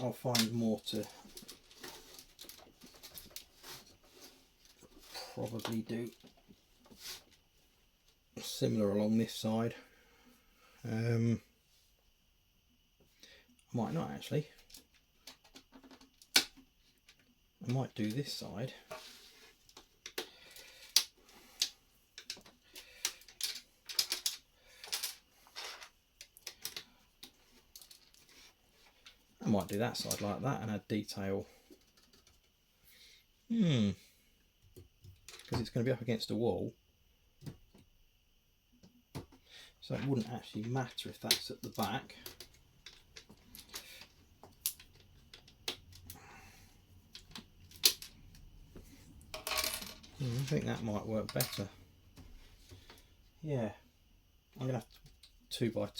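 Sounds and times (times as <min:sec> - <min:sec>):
plastic bricks clicking and clattering: 0:21.0 - 0:28.2.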